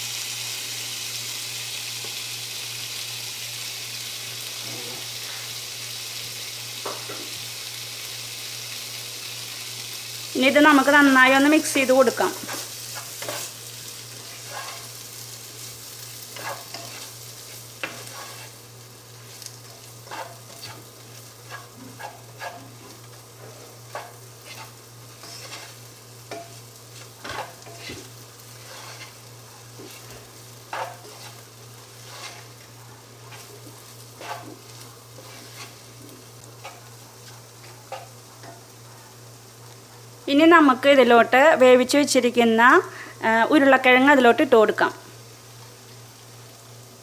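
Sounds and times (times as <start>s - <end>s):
sausage sizzling in a pan: 0.0s - 47.0s
spoon scraping and knocking pan: 12.4s - 13.5s, 14.2s - 14.9s, 16.3s - 18.6s, 19.3s - 38.7s.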